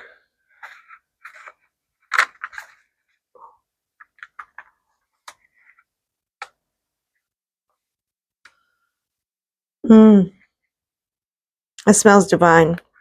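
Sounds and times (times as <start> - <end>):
packaging rustling and scraping: 0.6 - 3.2.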